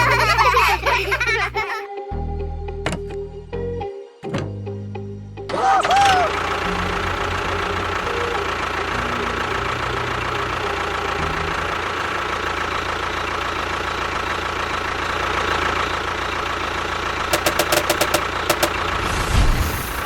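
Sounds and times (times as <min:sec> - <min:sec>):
model motor whine and rumble: 0:05.5 - 0:19.4
sharp clicks: 0:17.3 - 0:18.9.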